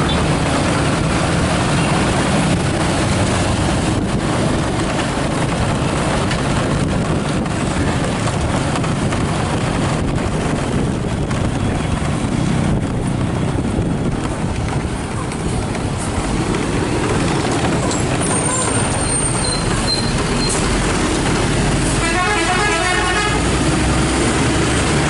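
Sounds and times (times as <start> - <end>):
wind rushing over microphone: 0.0 - 22.2
vehicle running: 0.0 - 25.0.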